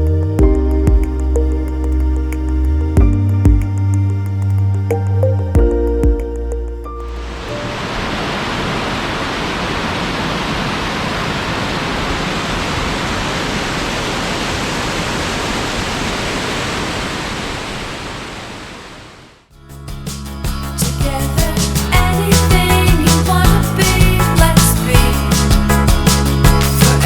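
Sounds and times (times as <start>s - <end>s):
waterfall rushing: 7.0s - 19.5s.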